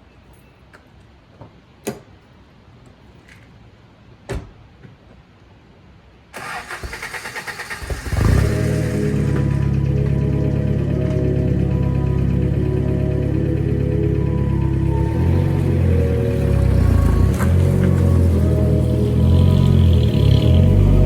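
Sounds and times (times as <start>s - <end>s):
car engine cranking and idling: 6.4s - 21.0s.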